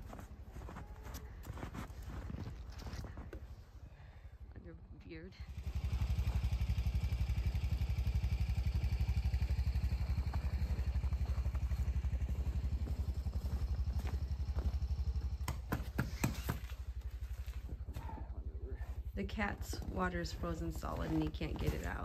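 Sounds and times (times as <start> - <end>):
small engine running: 5.3 - 22.0.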